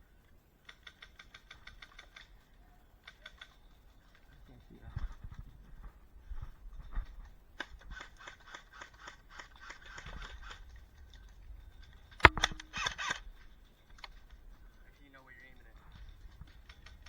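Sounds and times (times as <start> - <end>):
airsoft gun shots: 12.2 - 13.2
loud sharp crack: 12.2 - 13.2.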